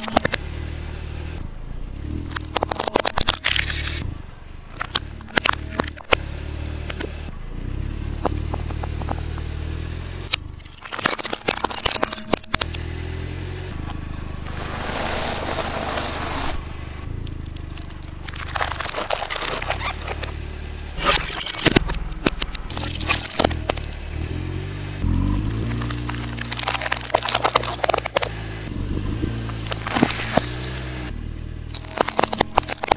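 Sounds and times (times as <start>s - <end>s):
plastic toys cracking under tyres: 0.0s - 0.4s, 2.2s - 4.0s, 10.6s - 12.8s, 17.2s - 20.3s, 21.0s - 24.0s, 25.4s - 28.3s, 31.7s - 32.9s.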